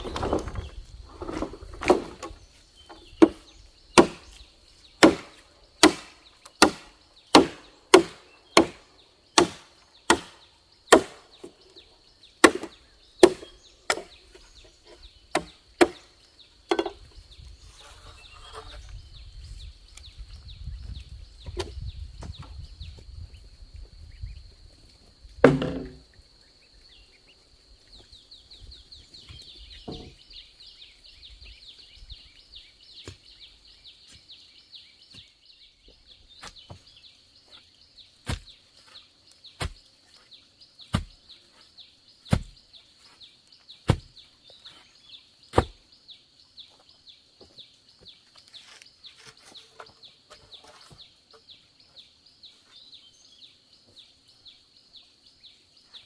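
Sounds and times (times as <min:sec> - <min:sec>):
blade chopping bamboo: 0:04.0 - 0:04.3, 0:05.0 - 0:11.5, 0:12.4 - 0:14.1, 0:15.3 - 0:16.1, 0:38.2 - 0:38.6, 0:39.6 - 0:39.9, 0:40.8 - 0:41.2, 0:42.3 - 0:42.6, 0:43.8 - 0:44.2, 0:45.5 - 0:45.8.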